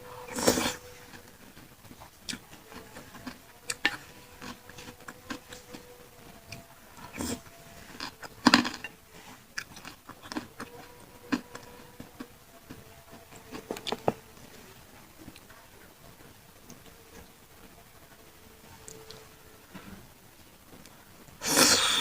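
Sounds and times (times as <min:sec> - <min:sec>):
person chewing food: 0:00.2 - 0:05.8, 0:06.4 - 0:12.8.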